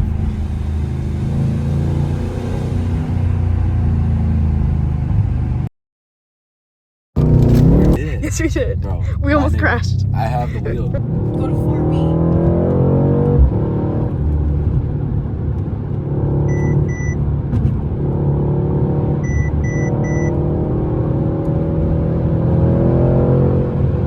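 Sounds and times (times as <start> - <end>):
car engine accelerating: 0.0 - 5.7, 7.2 - 24.0
low thump: 13.3 - 13.7
short electronic beep: 16.5 - 17.2, 19.2 - 20.3.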